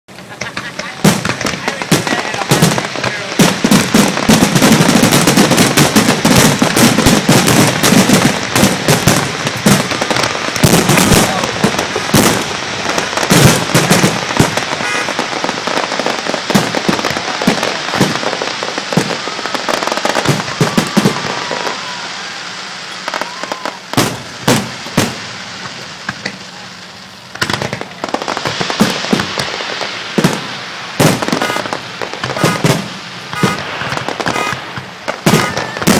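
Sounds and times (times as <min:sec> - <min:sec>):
fireworks bursts: 0:00.1 - 0:35.9
fireworks crackling: 0:00.1 - 0:35.9.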